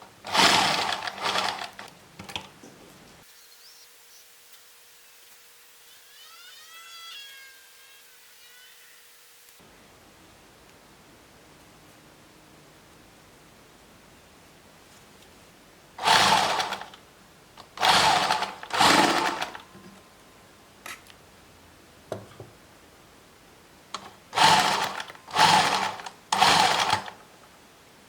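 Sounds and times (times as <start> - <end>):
sewing machine stitching: 0.2 - 1.9, 16.0 - 17.0, 17.8 - 19.6, 24.0 - 27.2.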